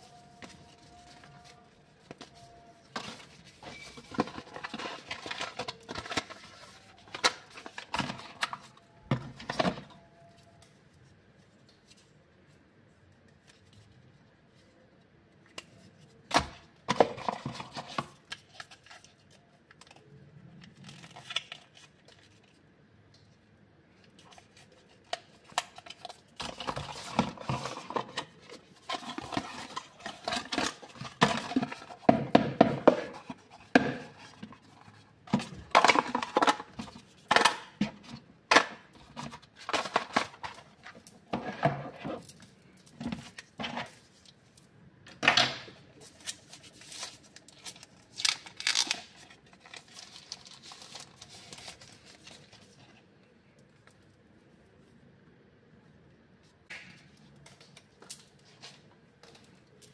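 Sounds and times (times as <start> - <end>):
packaging scraping and rustling: 0.0 - 10.4, 24.2 - 44.3, 46.0 - 53.0.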